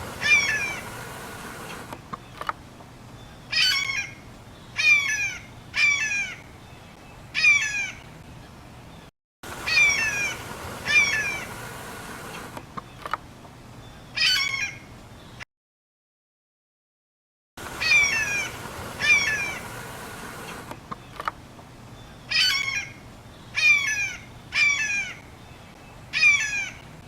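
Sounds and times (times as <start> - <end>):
bird harsh calls: 0.0 - 1.9, 3.5 - 4.2, 4.8 - 6.5, 7.4 - 8.0, 9.5 - 12.5, 14.2 - 14.9, 17.7 - 21.2, 22.0 - 26.8.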